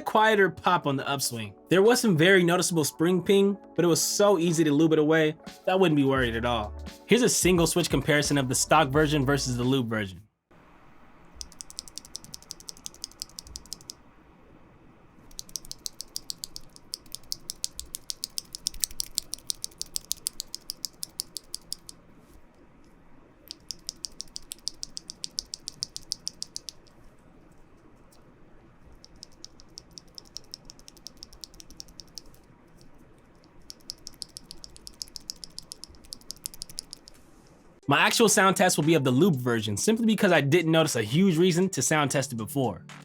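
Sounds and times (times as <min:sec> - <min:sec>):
keyboard switch clacking: 0:11.4 - 0:14.0, 0:15.3 - 0:22.0, 0:33.5 - 0:37.1.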